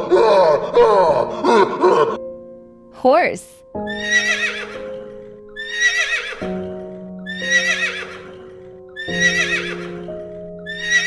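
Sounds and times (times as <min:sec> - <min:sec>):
background music of held chords: 0:00.0 - 0:11.0
horse whinnying: 0:03.9 - 0:11.0.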